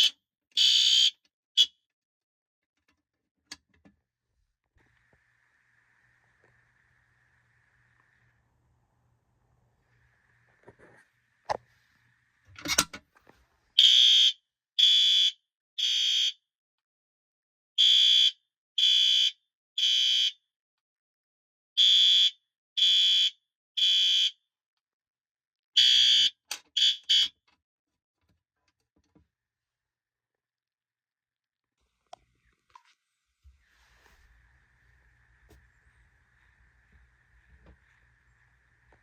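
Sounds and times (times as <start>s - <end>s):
fire alarm horn blasts: 0.0s - 1.7s, 13.8s - 16.4s, 17.8s - 20.4s, 21.8s - 24.4s, 25.8s - 27.4s.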